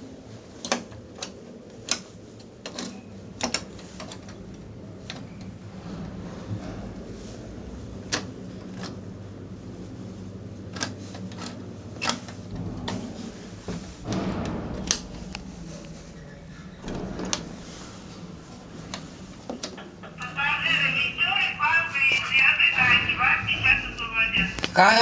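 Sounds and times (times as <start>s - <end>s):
low electrical hum: 1.4s - 25.0s
sharp clicks and knocks: 16.8s - 20.4s.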